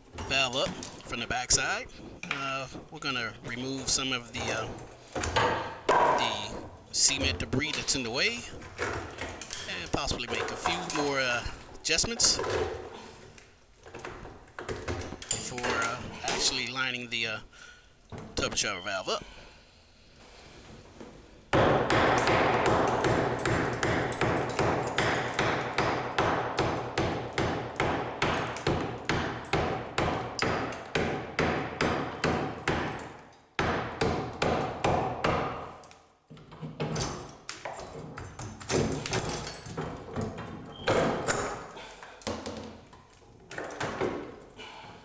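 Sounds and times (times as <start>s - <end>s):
hammer chipping cement: 21.6s - 35.8s.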